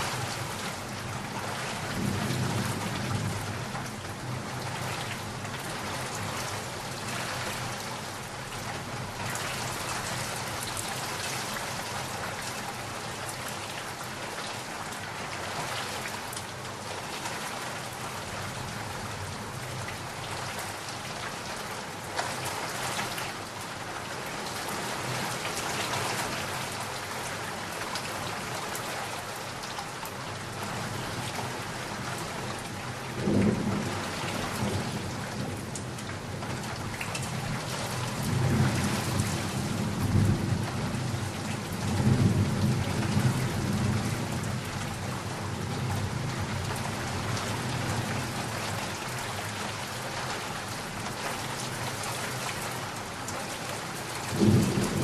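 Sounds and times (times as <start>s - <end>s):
steady rain falling: 0.0s - 55.0s
thunder crack and rumble: 33.2s - 35.8s, 54.3s - 55.0s.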